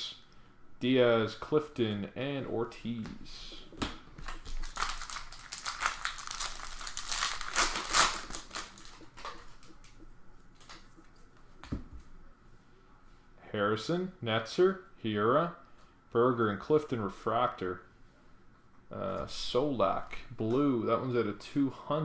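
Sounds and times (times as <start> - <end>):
wrapper tearing and crinkling: 4.2 - 10.0.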